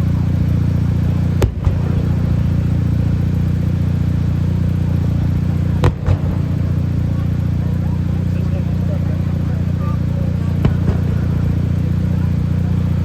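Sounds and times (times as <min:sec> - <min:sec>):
car engine rumbling: 0:00.0 - 0:13.0
sharp engine pops: 0:00.4 - 0:07.7, 0:10.0 - 0:13.0.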